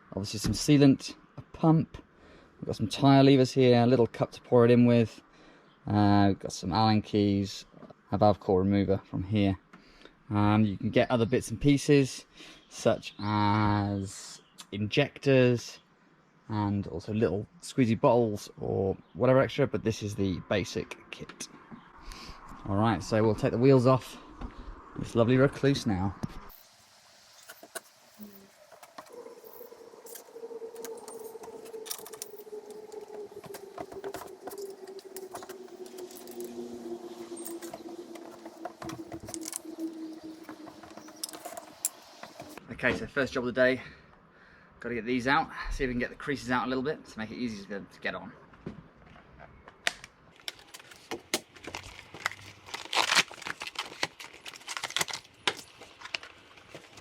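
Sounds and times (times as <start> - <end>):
tyres crinkling and rustling: 27.3 - 42.6, 49.7 - 57.0.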